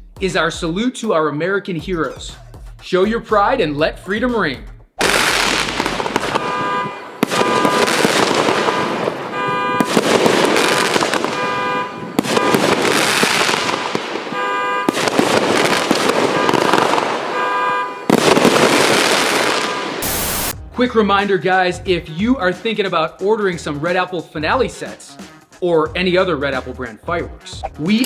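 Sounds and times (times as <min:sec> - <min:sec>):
fireworks barrage and crackle: 0:05.0 - 0:17.5, 0:18.1 - 0:20.6
horn-like steady tone: 0:06.3 - 0:10.0, 0:11.3 - 0:12.8, 0:14.3 - 0:15.0, 0:16.3 - 0:18.2, 0:19.4 - 0:20.6.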